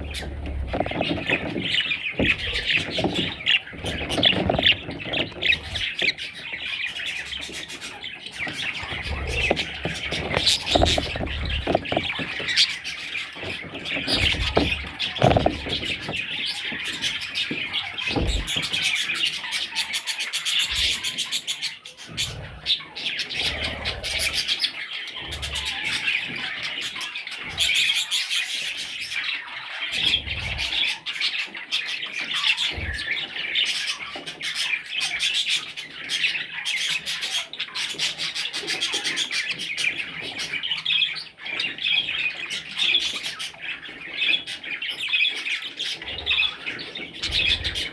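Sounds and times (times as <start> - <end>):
bird chicks chirping: 0.0 - 47.9.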